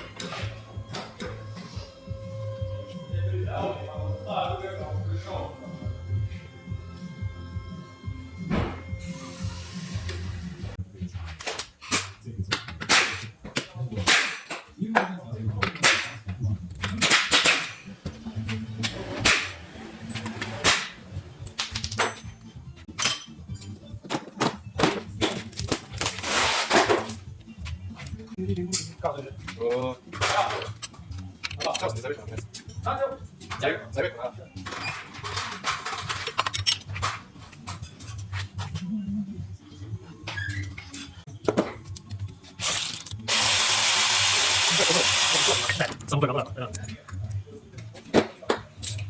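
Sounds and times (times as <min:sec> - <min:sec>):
background music: 0:00.0 - 0:49.0
metal tools clicking and knocking: 0:21.4 - 0:24.5, 0:30.1 - 0:32.9, 0:34.7 - 0:38.0, 0:41.8 - 0:43.6, 0:45.4 - 0:47.5
metallic tool clicks: 0:42.0 - 0:43.7
loud steady hiss: 0:42.6 - 0:46.0.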